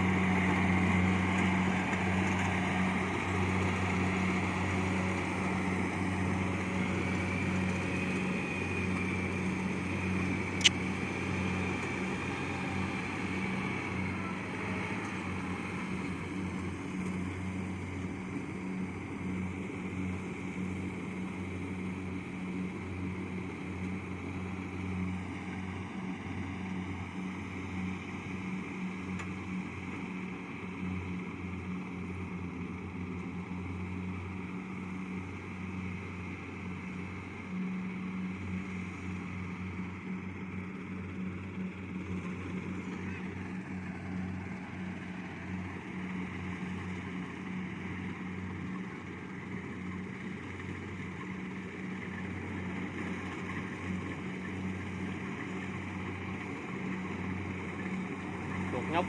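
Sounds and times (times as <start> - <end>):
diesel engine hum: 0.0 - 59.0
sharp click: 10.6 - 10.8.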